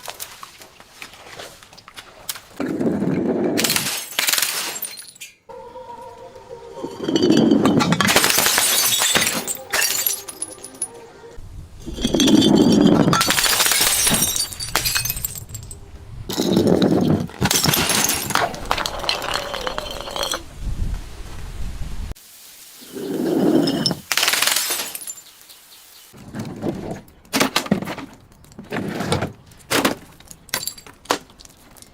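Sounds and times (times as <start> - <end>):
glass bottles crushed and shattering: 3.6 - 5.4, 7.0 - 10.9, 11.8 - 20.4, 23.6 - 25.3, 29.7 - 31.6
glass shards clinking: 3.6 - 5.4, 7.0 - 10.9, 11.8 - 20.4, 23.6 - 25.3.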